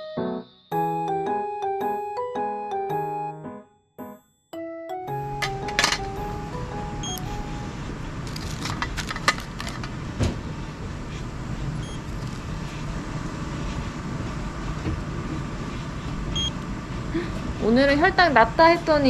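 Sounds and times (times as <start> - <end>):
faint steady tone: 5.1 - 8.1
steady background hum: 5.1 - 19.0.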